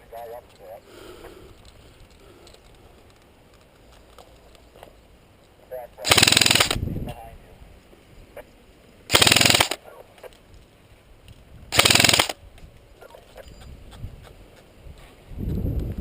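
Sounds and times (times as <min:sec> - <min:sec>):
airsoft rifle bursts: 0:06.0 - 0:06.8, 0:09.1 - 0:09.8, 0:11.7 - 0:12.4.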